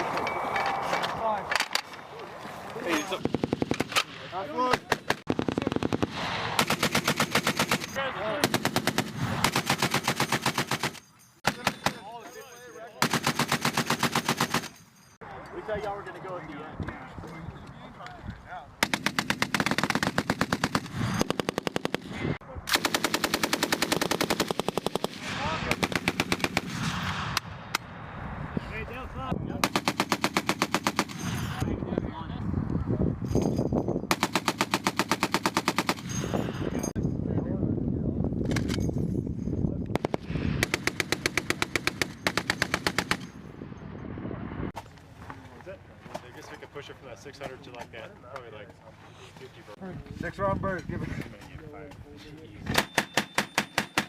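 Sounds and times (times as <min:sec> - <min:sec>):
machine guns firing: 0:03.2 - 0:04.1, 0:04.7 - 0:12.1, 0:13.0 - 0:14.8, 0:18.8 - 0:27.0, 0:29.6 - 0:31.2, 0:34.1 - 0:36.1, 0:40.0 - 0:43.3, 0:52.8 - 0:54.0.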